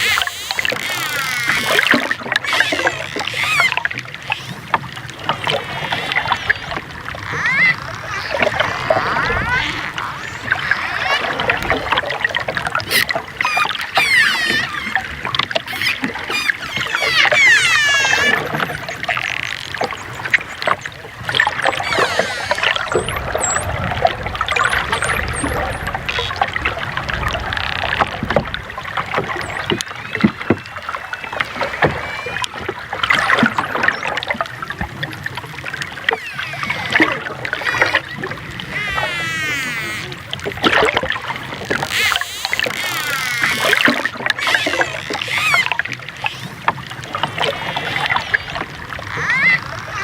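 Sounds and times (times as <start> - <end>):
dolphin buzzing squawks: 0.0 - 12.0, 12.8 - 20.6, 21.5 - 23.7, 29.5 - 34.1, 36.0 - 40.4, 41.4 - 50.0
dolphin clicks: 0.0 - 12.1, 12.8 - 23.7, 35.8 - 50.0
dolphin whistles: 2.4 - 4.6, 5.5 - 11.5, 12.9 - 19.1, 29.4 - 34.1, 36.1 - 40.2, 41.9 - 43.7, 44.4 - 50.0.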